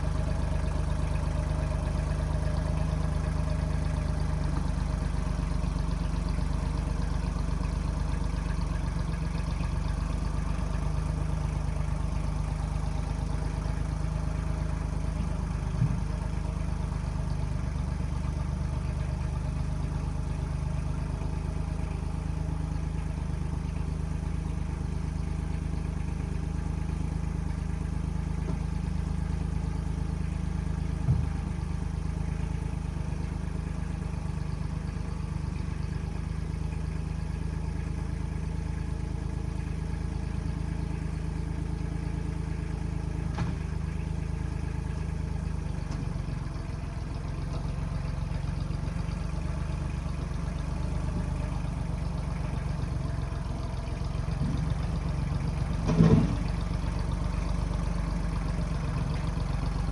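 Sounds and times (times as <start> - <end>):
backhoe diesel engine running: 0.0 - 59.9.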